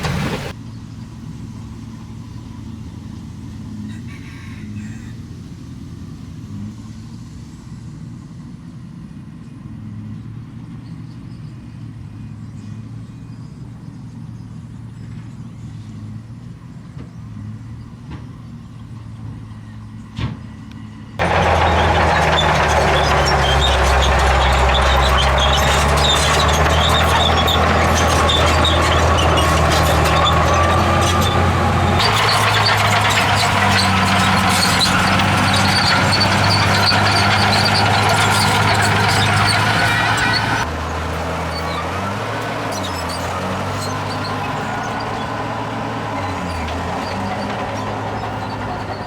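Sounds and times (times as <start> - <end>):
heavy machinery engines running: 21.2 - 49.0.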